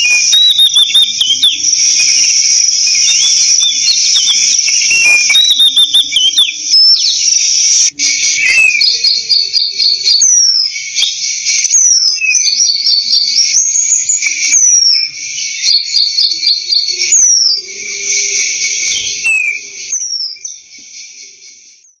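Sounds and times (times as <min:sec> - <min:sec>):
insect buzz: 0:00.0 - 0:09.0
bird singing whistled phrases: 0:00.0 - 0:22.0.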